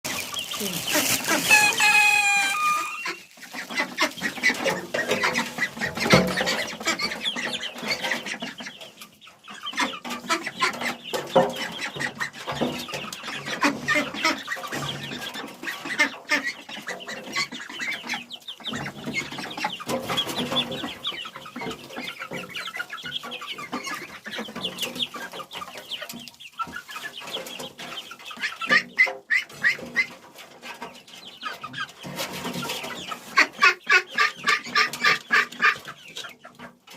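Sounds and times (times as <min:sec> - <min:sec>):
fowl calling: 0:00.5 - 0:07.6.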